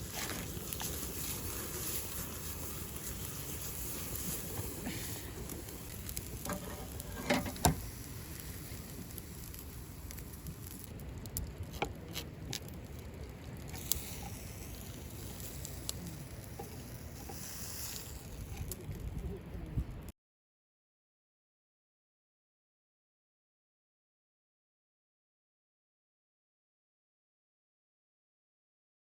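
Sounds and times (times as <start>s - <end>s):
fire crackling and sizzling: 0.0s - 20.1s.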